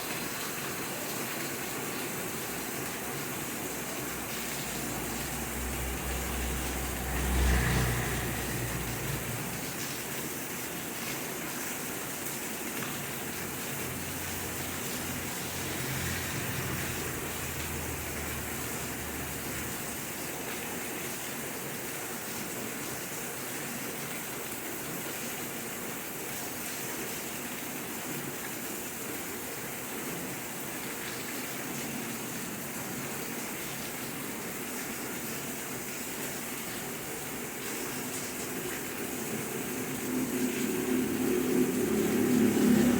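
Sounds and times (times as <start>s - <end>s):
steady rain falling: 0.0s - 42.9s
low rumble: 4.1s - 10.0s.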